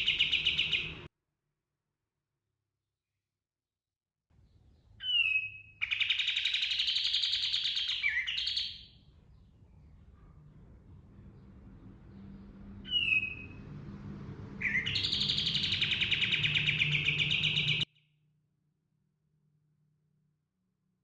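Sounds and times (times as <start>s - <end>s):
bird fast rolling trill: 0.0s - 1.1s, 5.1s - 17.8s
bird whistled note: 12.8s - 13.6s, 14.6s - 17.8s.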